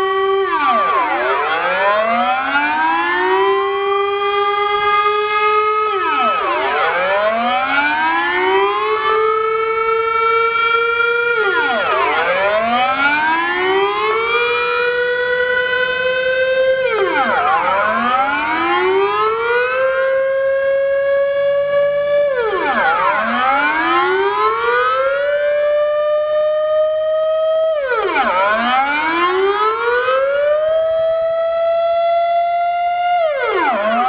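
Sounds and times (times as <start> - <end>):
air-raid siren wailing: 0.0 - 34.0.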